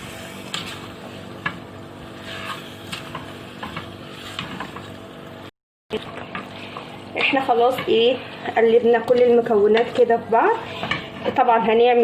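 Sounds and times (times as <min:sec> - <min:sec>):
utensil scraping and knocking pot: 0:00.5 - 0:04.9.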